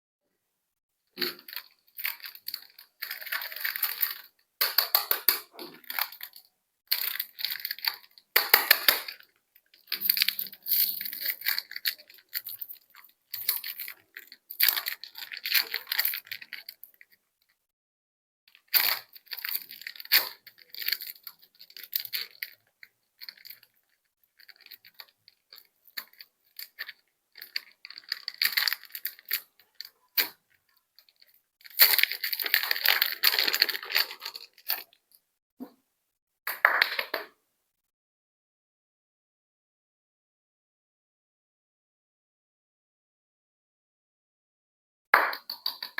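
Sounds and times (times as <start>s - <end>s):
plastic wrappers crinkling and tearing: 1.2s - 17.2s, 18.5s - 35.1s.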